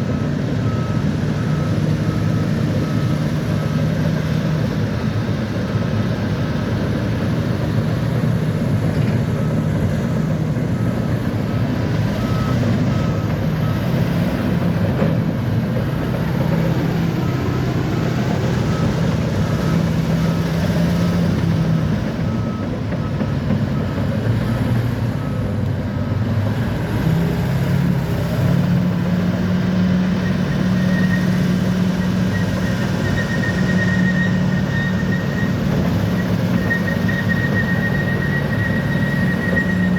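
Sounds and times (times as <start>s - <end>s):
bulldozer diesel engine running: 0.0s - 39.9s
reverse alarm beeping: 10.5s - 15.0s, 16.3s - 26.1s, 30.1s - 39.9s.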